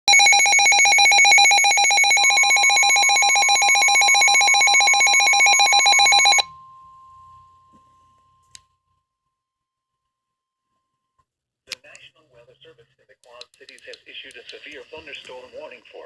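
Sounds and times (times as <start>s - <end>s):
electronic trilling alarm tone: 0.1s - 6.6s.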